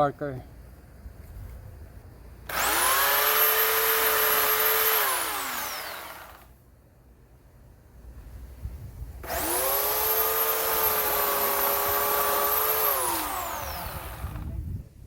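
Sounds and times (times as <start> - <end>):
electric chainsaw motor whining: 2.5 - 6.6, 9.2 - 14.7.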